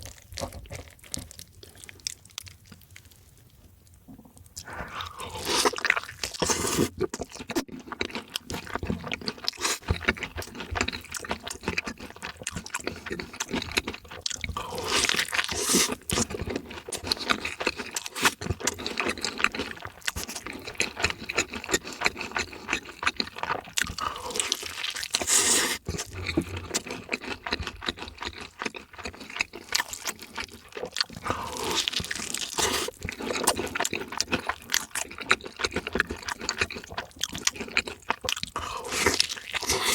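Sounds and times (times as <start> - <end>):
chewing and crunching food: 0.0 - 39.9
wet mouth sounds: 21.3 - 39.9.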